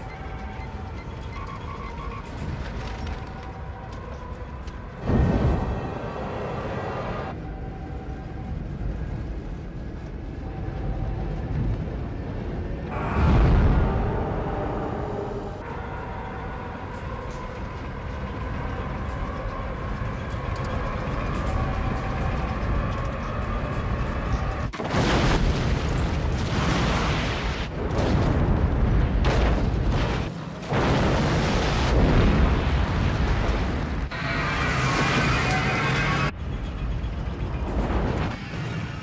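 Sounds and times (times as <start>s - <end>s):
loud rushing rumble with booms: 12.8s - 15.6s.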